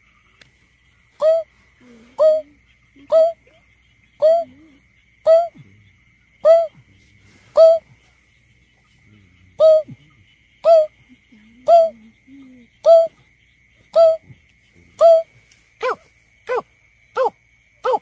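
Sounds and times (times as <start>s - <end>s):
bird giving low hoots: 1.2s - 3.6s, 4.2s - 5.6s, 6.4s - 6.8s, 7.5s - 7.9s, 9.6s - 10.9s, 11.6s - 13.1s.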